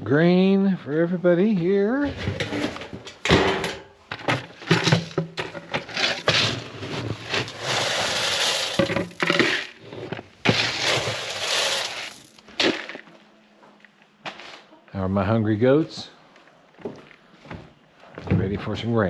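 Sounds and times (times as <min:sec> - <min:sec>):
grain pouring: 0:05.9 - 0:13.0
scoop knocking container: 0:07.3 - 0:09.7, 0:10.5 - 0:13.0.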